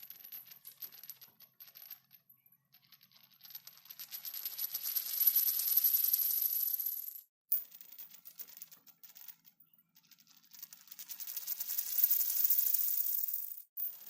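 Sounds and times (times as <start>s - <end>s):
coin spinning rattle: 10.7s - 14.0s.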